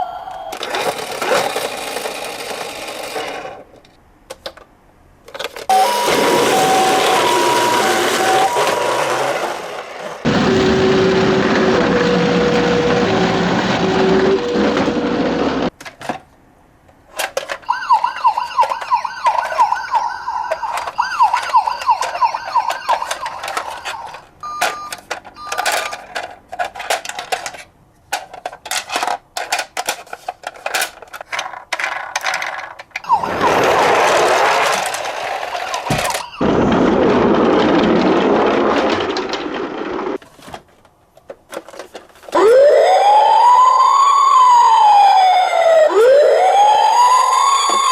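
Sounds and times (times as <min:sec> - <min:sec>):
hi-lo toy siren: 0:00.0 - 0:00.7, 0:05.7 - 0:09.5, 0:17.6 - 0:26.0, 0:33.0 - 0:36.8, 0:42.4 - 0:47.9
plastic clicks and rattles: 0:03.8 - 0:05.7, 0:20.5 - 0:33.1, 0:41.2 - 0:42.4
fast warbling siren: 0:05.7 - 0:09.4, 0:17.6 - 0:24.7, 0:33.0 - 0:36.9, 0:42.4 - 0:47.9
short beeps: 0:23.7 - 0:26.0.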